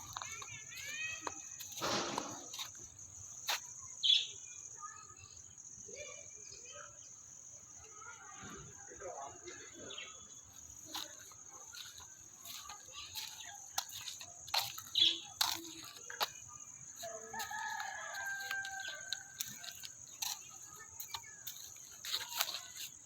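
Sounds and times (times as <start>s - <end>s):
high insect drone: 0.0s - 23.0s
bird chirps: 4.0s - 4.6s, 11.7s - 22.8s
rooster crowing: 17.0s - 20.4s.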